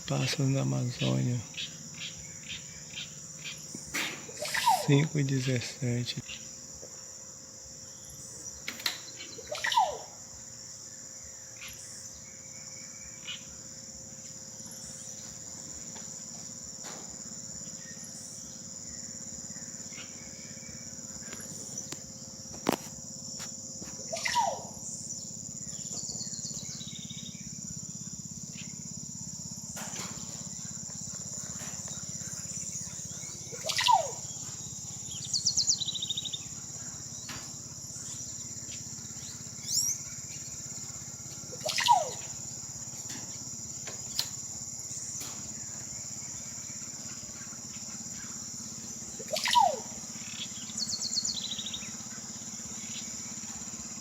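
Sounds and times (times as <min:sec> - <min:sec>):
insects droning: 0:00.0 - 0:54.0
bird whistled call: 0:03.9 - 0:05.0, 0:09.1 - 0:10.2, 0:24.1 - 0:24.8, 0:33.5 - 0:34.4, 0:41.5 - 0:42.4, 0:49.2 - 0:51.8.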